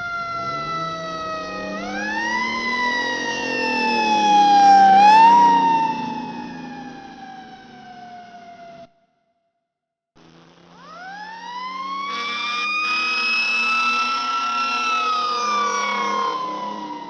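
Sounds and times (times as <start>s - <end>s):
engine rumble: 0.0s - 8.4s
fire truck siren wailing: 0.0s - 9.0s, 10.7s - 17.0s.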